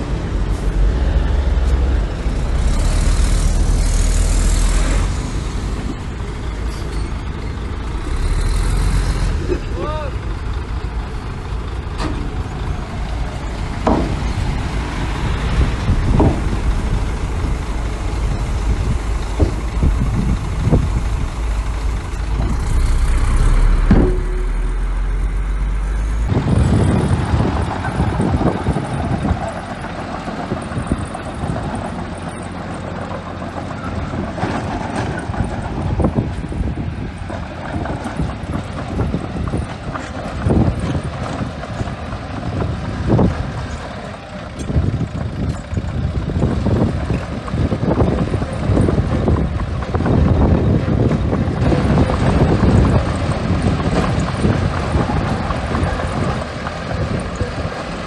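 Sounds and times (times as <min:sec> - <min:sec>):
bulldozer diesel engine rumbling: 0:00.0 - 0:58.0
metallic clanks of tracks: 0:05.7 - 0:07.6, 0:11.8 - 0:14.9, 0:18.4 - 0:58.0.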